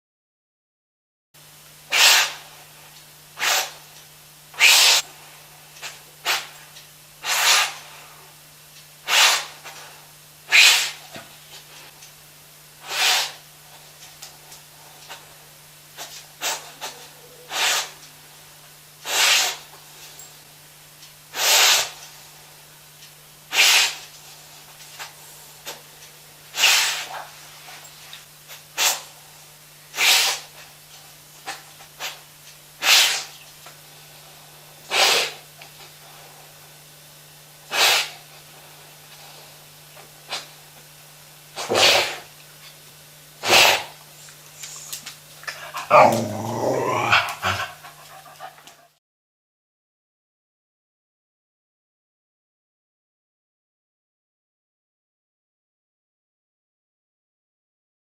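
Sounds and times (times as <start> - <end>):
dog sniffing loudly: 1.9 - 2.5, 3.4 - 3.8, 4.6 - 5.0, 7.2 - 8.0, 9.0 - 9.9, 10.5 - 11.0, 12.8 - 13.4, 16.0 - 18.0, 19.0 - 19.7, 21.3 - 22.1, 23.5 - 24.1, 26.5 - 27.8, 28.5 - 29.1, 30.0 - 30.6, 32.8 - 33.4, 34.9 - 35.4, 37.7 - 38.3, 41.6 - 42.3, 43.4 - 48.9
faint dog snuffles: 7.2 - 8.1, 9.1 - 11.0, 12.8 - 13.4, 16.0 - 18.0, 19.0 - 20.2, 21.3 - 22.0, 23.5 - 24.0, 26.5 - 27.8, 30.0 - 30.6, 32.8 - 33.4, 34.9 - 35.4, 37.7 - 38.2, 41.6 - 42.3, 43.4 - 44.0.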